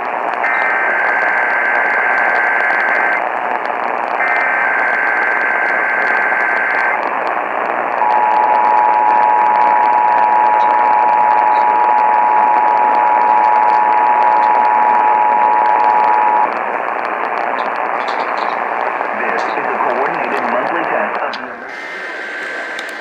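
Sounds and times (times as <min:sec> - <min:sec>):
radio static hiss: 0:00.0 - 0:23.0.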